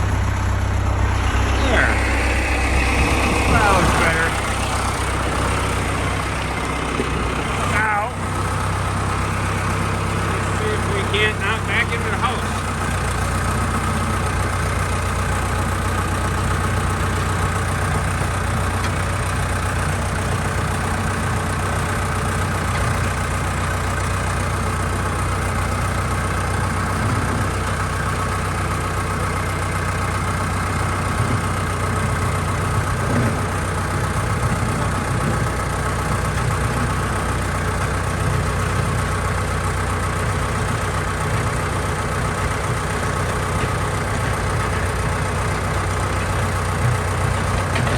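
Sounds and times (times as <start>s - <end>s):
engine idling: 0.0s - 47.9s.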